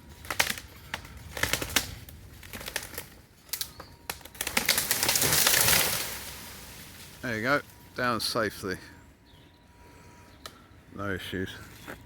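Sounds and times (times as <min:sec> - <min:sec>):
wood cracking and snapping: 0:00.2 - 0:07.2
tree crashing down: 0:00.2 - 0:07.7.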